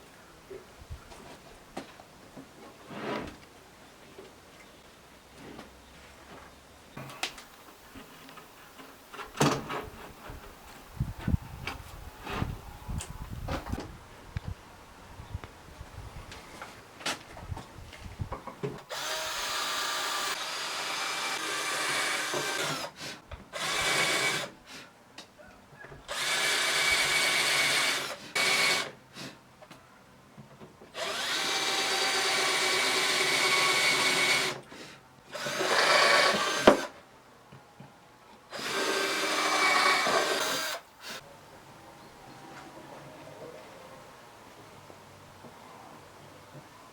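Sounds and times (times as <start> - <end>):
power drill driving screws: 18.9 - 23.0, 23.6 - 24.5, 26.1 - 29.0, 31.0 - 34.6, 35.3 - 37.0, 38.5 - 41.2.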